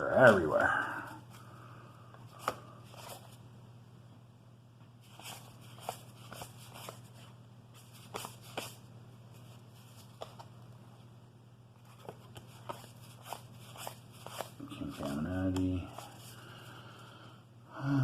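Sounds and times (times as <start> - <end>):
steady low hum: 0.0 - 18.0
cards being flipped through: 2.2 - 3.4, 5.0 - 10.8, 11.8 - 16.3.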